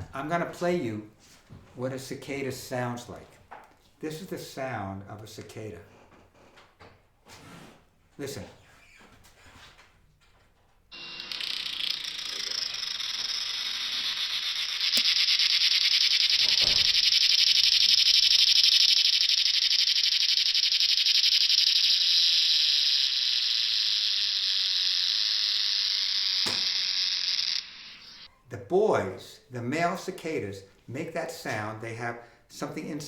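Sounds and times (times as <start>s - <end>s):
cicada buzzing: 10.9s - 28.3s.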